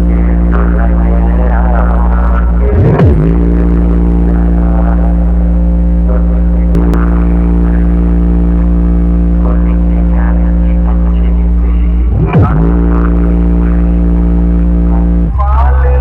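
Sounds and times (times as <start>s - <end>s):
deep bass drone from speakers: 0.0s - 16.0s.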